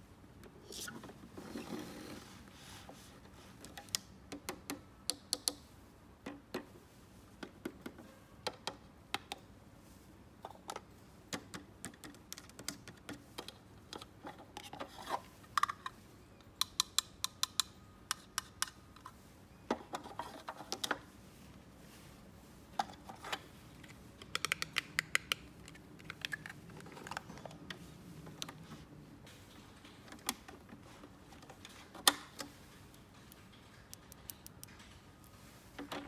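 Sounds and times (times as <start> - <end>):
plastic toy pieces clicking: 24.2 - 27.1.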